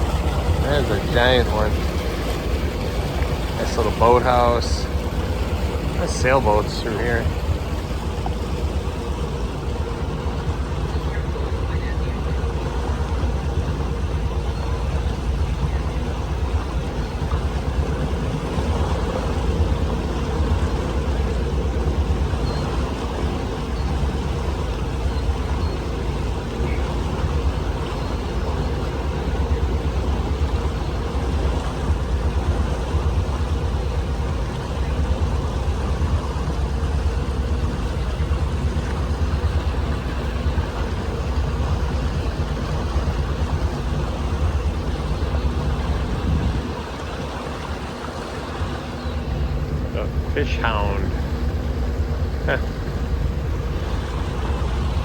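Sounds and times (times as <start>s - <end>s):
boat engine humming: 0.0s - 55.0s
water noise: 0.0s - 55.0s
wind noise: 37.4s - 50.4s.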